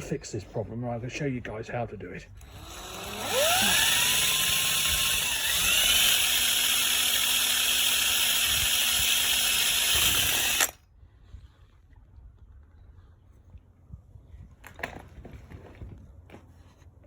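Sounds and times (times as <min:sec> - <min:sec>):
electric drill motor spinning: 0:02.4 - 0:10.8.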